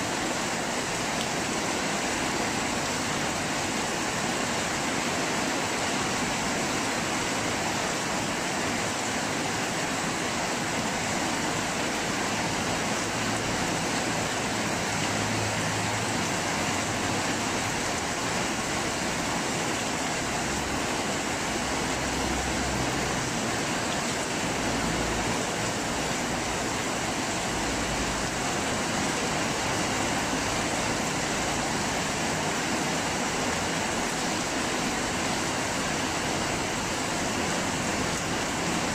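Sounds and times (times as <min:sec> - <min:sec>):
heavy rain pouring: 0:00.0 - 0:38.9.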